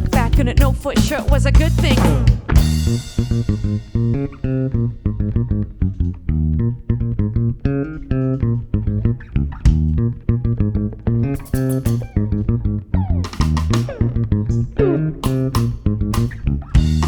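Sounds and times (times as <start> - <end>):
drum kit crash: 0.0 - 4.5, 15.2 - 17.0
electric bass and guitar playing: 0.0 - 17.0
sharp drum hit: 2.0 - 4.3.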